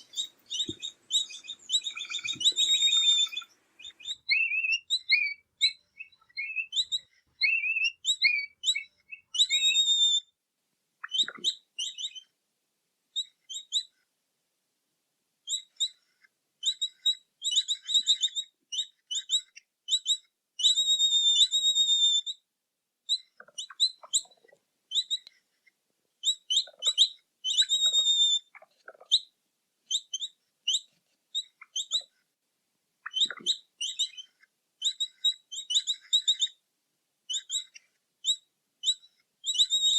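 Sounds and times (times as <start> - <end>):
capybara chirping whistles: 0.0 - 10.3, 16.6 - 22.4, 26.2 - 29.3, 33.1 - 36.6, 37.3 - 39.9.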